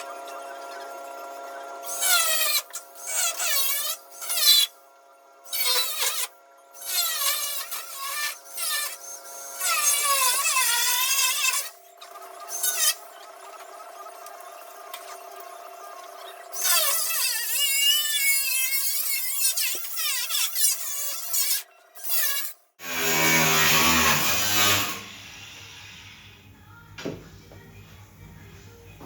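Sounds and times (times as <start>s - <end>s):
angle grinder whining on sheet steel: 5.4s - 26.5s.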